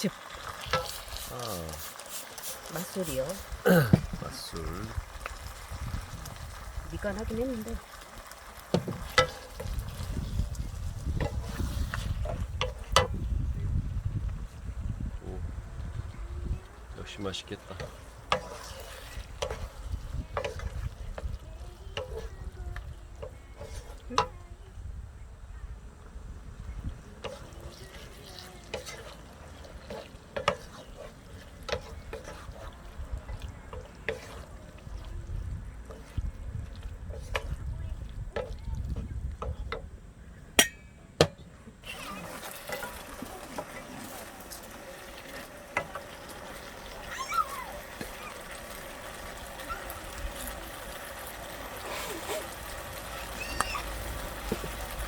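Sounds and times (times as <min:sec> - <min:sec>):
metal utensil scraping a pan: 0:00.5 - 0:03.3, 0:08.7 - 0:10.4, 0:11.0 - 0:13.2, 0:17.8 - 0:22.4, 0:23.2 - 0:24.4, 0:27.1 - 0:34.9, 0:40.6 - 0:41.0, 0:41.8 - 0:44.2
faint voices: 0:15.2 - 0:55.0
cookware clinking: 0:40.6 - 0:41.4.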